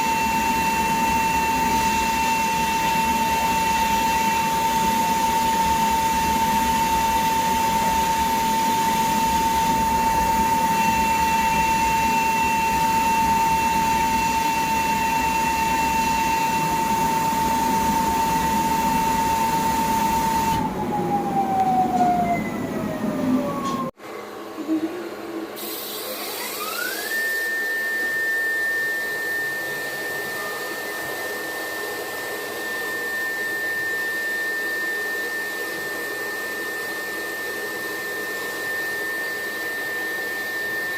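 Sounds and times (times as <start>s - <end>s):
spindle whining: 0.0s - 24.0s.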